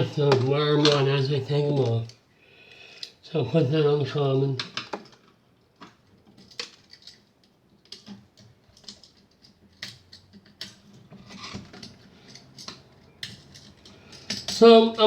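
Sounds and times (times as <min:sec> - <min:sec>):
tool clicking on wires and screws: 0:06.3 - 0:15.0.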